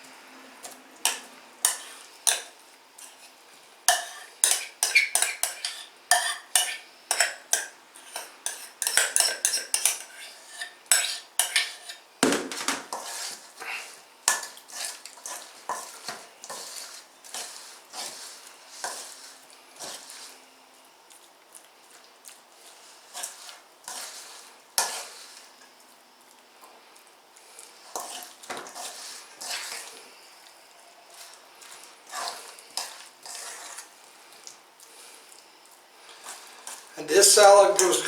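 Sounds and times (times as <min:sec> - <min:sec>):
utensil scraping a mixing bowl: 0:08.0 - 0:20.4, 0:22.6 - 0:25.6, 0:27.8 - 0:30.0, 0:31.1 - 0:33.9.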